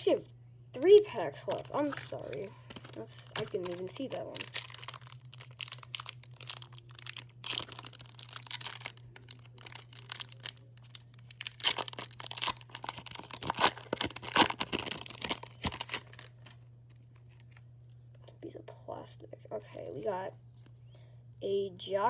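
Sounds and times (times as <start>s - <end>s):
steady low hum: 0.0s - 22.0s
plastic wrapper crinkling: 0.8s - 17.7s.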